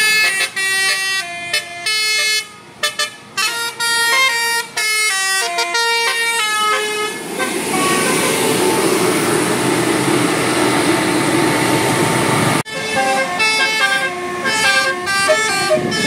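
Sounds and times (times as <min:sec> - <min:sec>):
multi-tone bus horn melody: 0:00.0 - 0:09.4, 0:12.6 - 0:16.0
loud rush of noise: 0:07.0 - 0:12.6.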